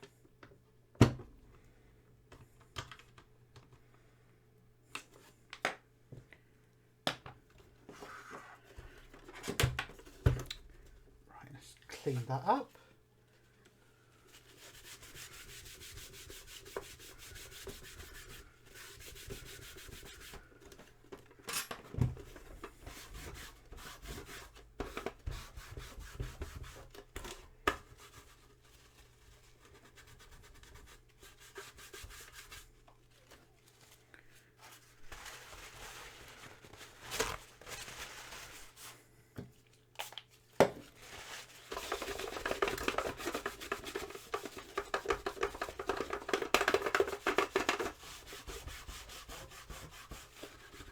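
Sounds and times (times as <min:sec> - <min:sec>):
rubbing and scrubbing: 0:14.3 - 0:20.5, 0:27.9 - 0:33.3, 0:40.9 - 0:50.9.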